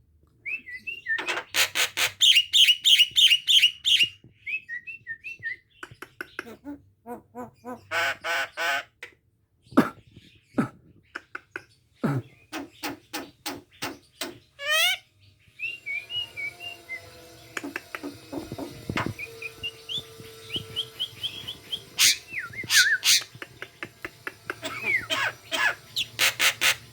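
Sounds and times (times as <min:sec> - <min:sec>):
bird mimicking a cough: 0:09.7 - 0:10.8, 0:24.5 - 0:25.7
bird rising call: 0:15.6 - 0:23.4
bird clicks: 0:17.6 - 0:19.1.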